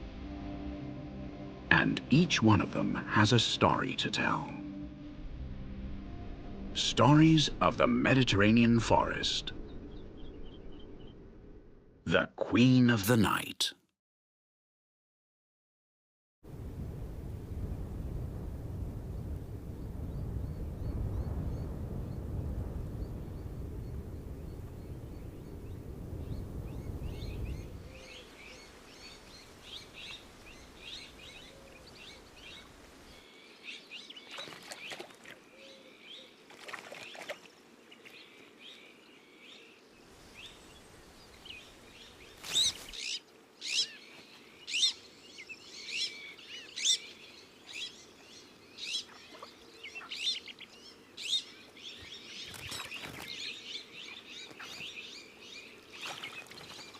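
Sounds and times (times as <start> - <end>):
songbirds chirping: 1.2 - 5.2, 6.1 - 11.5, 19.2 - 56.9
low rumble: 9.4 - 12.0, 16.5 - 27.9.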